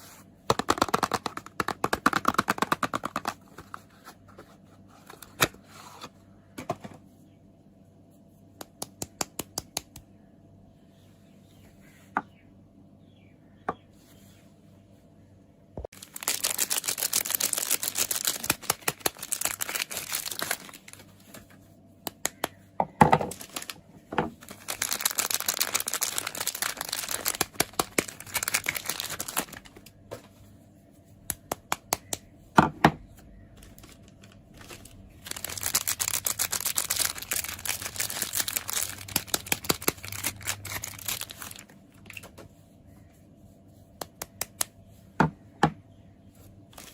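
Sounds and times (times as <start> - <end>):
packaging crinkling and tearing: 0.5 - 3.8, 15.9 - 21.5, 23.2 - 29.9, 33.6 - 42.3.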